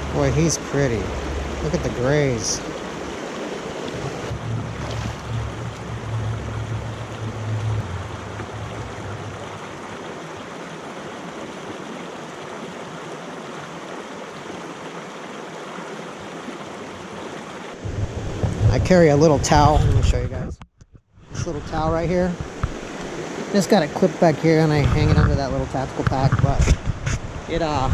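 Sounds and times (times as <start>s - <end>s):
low rumble: 0.0s - 3.2s, 3.9s - 10.1s
creek water rushing: 0.0s - 20.3s, 21.4s - 26.5s.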